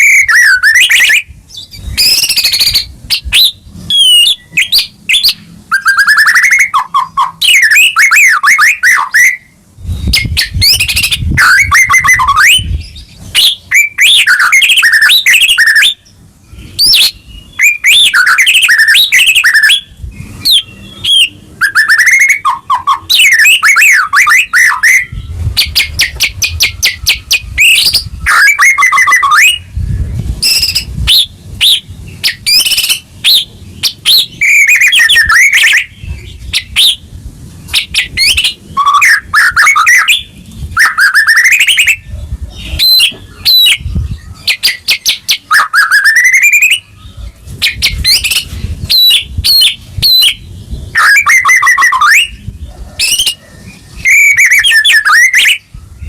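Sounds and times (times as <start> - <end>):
bird singing: 0.0 - 56.0.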